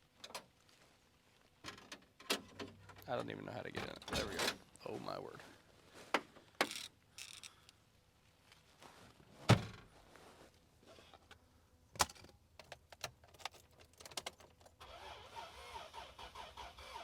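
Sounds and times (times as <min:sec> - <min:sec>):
engine cranking without starting: 0:14.8 - 0:17.0.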